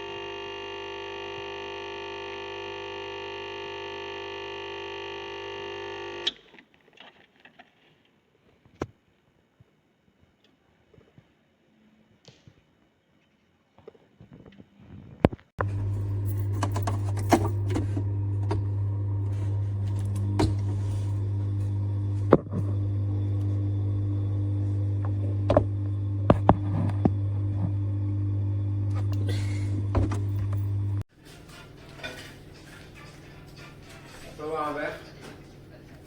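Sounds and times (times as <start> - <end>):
espresso machine pump buzzing: 0.0 - 6.4, 15.6 - 31.0.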